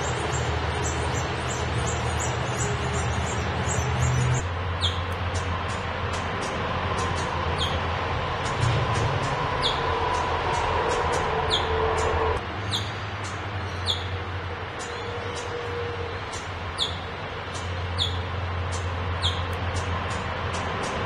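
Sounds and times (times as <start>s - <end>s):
bird chirping: 0.0s - 6.2s, 7.1s - 7.8s, 8.4s - 14.2s, 16.3s - 19.9s
road traffic rumble: 0.0s - 21.0s.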